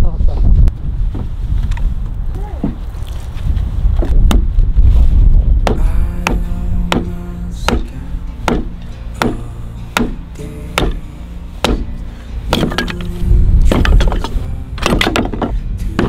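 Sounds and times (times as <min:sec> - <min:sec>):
loud low rumble: 0:03.4 - 0:16.0
sharp wooden strikes: 0:04.0 - 0:04.5, 0:05.6 - 0:16.0
background music: 0:05.5 - 0:16.0.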